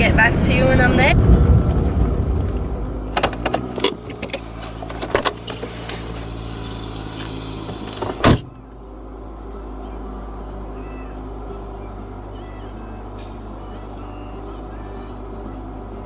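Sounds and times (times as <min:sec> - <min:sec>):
car engine and road noise: 0:00.0 - 0:16.0
loud thump: 0:08.0 - 0:08.5.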